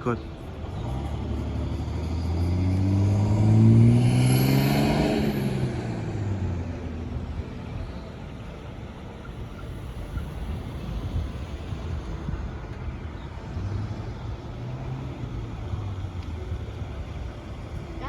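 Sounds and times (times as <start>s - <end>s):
vehicle driving past: 0.5s - 8.1s.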